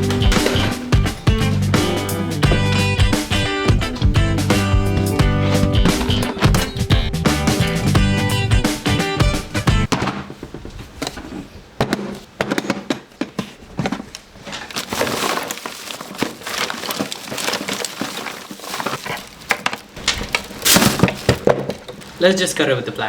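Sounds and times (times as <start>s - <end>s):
hard object cracking and breaking: 14.6s - 22.2s.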